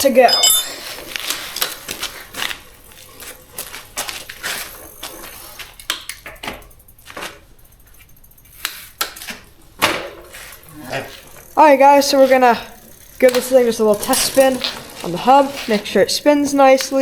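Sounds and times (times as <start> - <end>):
tools and parts clicking: 0.0 - 2.0.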